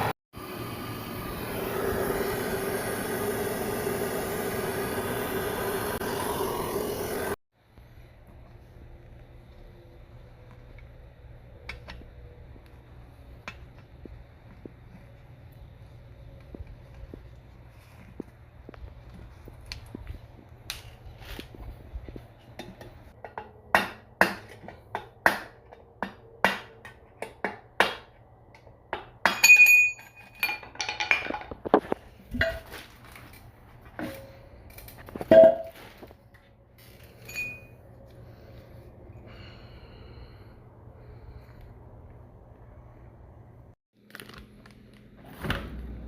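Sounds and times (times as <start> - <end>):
metal clinks and knocks: 29.2 - 33.4, 37.0 - 37.8.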